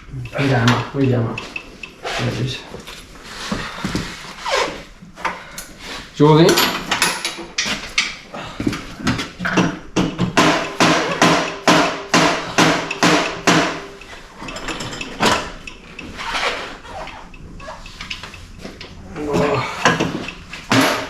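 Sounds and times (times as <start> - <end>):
hammer striking metal frame: 6.4 - 8.2, 9.5 - 15.8, 17.9 - 21.0.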